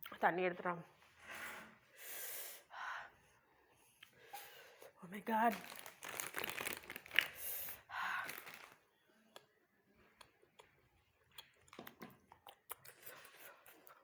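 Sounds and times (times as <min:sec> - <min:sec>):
person hissing and blowing breaths: 0:01.2 - 0:03.2, 0:07.3 - 0:08.5
faint chewing: 0:08.3 - 0:14.0
mouth clicks: 0:09.3 - 0:14.0.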